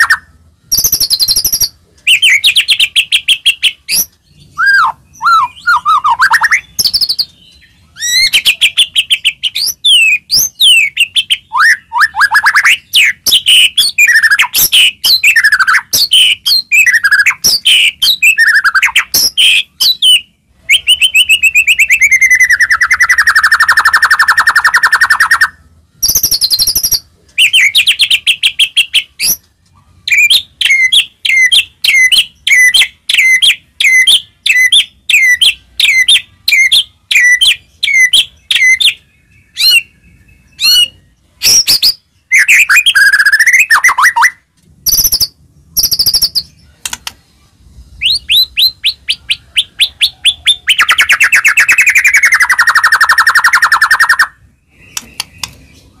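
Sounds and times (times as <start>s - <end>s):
songbird singing whistles and trills: 0.0s - 47.0s, 47.9s - 56.0s.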